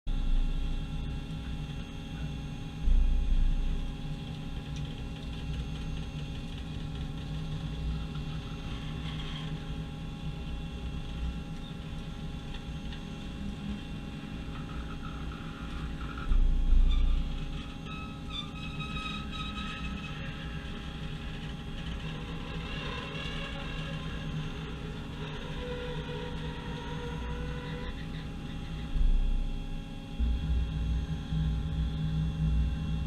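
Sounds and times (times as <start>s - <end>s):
low rumble: 2.7s - 17.8s, 23.3s - 33.0s.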